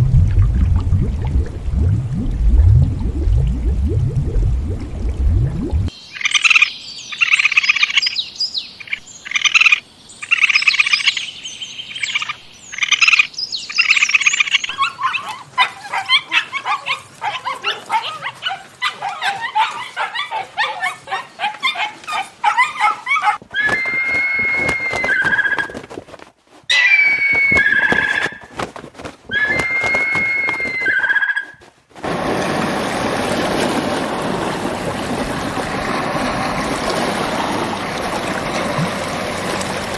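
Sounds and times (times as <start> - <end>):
loud high animal calls: 14.7 - 25.8, 26.7 - 28.5, 29.3 - 31.6
whistle-like animal calls: 23.5 - 25.9, 26.7 - 28.6, 29.3 - 31.6.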